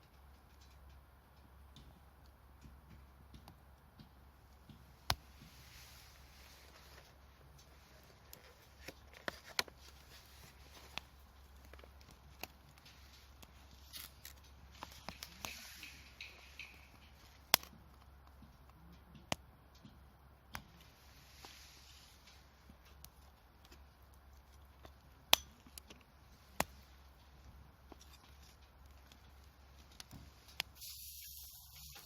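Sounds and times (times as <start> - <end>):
campfire crackling and popping: 0.1 - 32.0
faint hiss: 5.0 - 8.9, 12.8 - 17.6, 20.7 - 22.8, 29.2 - 32.0.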